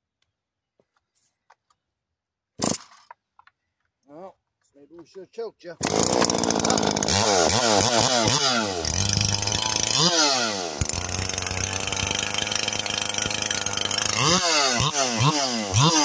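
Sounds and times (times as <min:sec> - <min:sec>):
chainsaw revving and running: 0:05.8 - 0:16.0.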